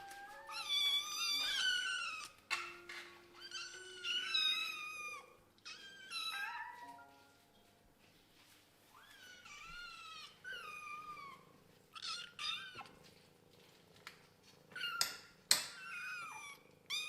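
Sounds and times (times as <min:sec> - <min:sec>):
kittens meowing: 0:00.0 - 0:02.4, 0:03.4 - 0:06.9, 0:09.0 - 0:13.0, 0:15.8 - 0:17.0.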